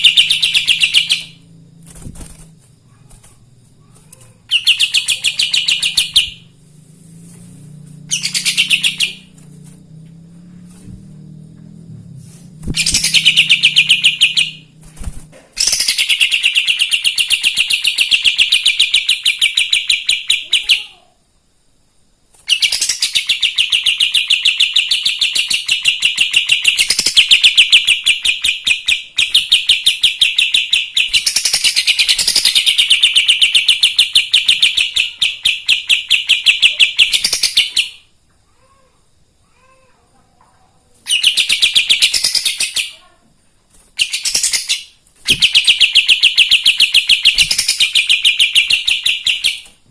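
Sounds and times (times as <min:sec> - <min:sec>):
songbird singing rapid high notes: 0:04.4 - 0:06.6, 0:08.1 - 0:09.3, 0:12.8 - 0:14.8.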